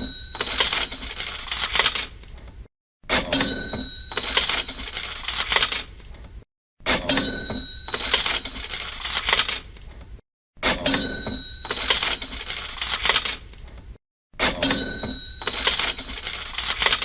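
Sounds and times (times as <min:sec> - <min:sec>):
cash register bell ding: 0:00.0 - 0:02.0, 0:03.1 - 0:05.7, 0:06.9 - 0:09.5, 0:10.6 - 0:13.2, 0:14.4 - 0:17.0
cash register clicks: 0:00.0 - 0:02.3, 0:03.1 - 0:06.1, 0:06.9 - 0:09.8, 0:10.6 - 0:13.6, 0:14.4 - 0:17.0
coins rattling: 0:00.3 - 0:02.2, 0:04.1 - 0:06.1, 0:07.9 - 0:09.9, 0:11.6 - 0:13.6, 0:15.4 - 0:17.0.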